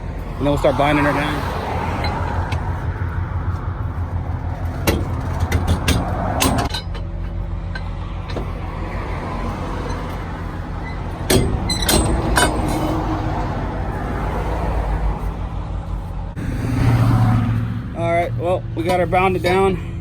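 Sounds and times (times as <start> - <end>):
diesel truck engine idling: 0.0 - 20.0
metal chains clanking: 1.8 - 13.7.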